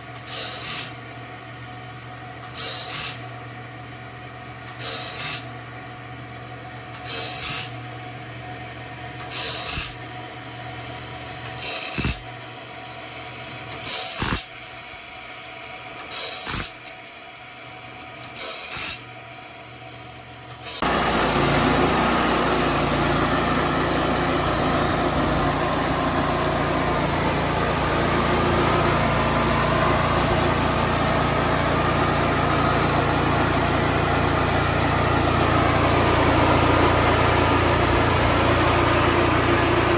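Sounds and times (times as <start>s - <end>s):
sawmill engine and saw running: 20.1s - 39.9s.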